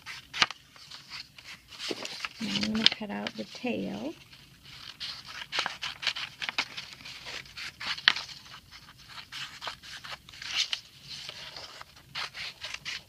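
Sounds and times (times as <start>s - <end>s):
paper rustling: 0.0s - 13.0s
scissors snipping paper: 1.8s - 4.1s, 9.0s - 13.0s.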